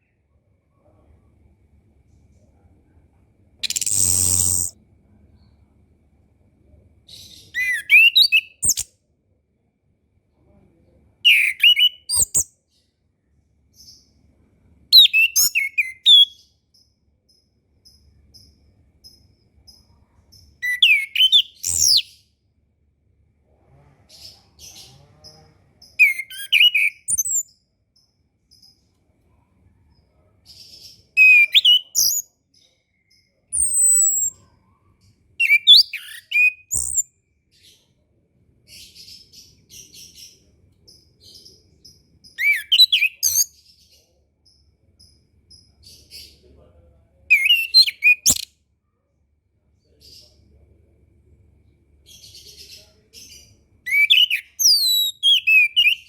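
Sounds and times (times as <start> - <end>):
soft scratchy twittering: 3.6 - 4.8, 24.6 - 37.8
thrush whistling song: 3.6 - 4.8, 53.9 - 56.0.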